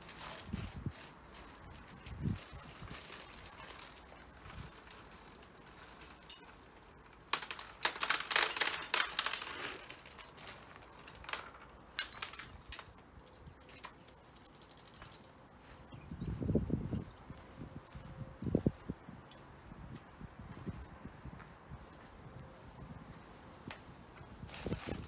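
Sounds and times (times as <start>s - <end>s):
small clicks and clinks: 2.4s - 15.4s.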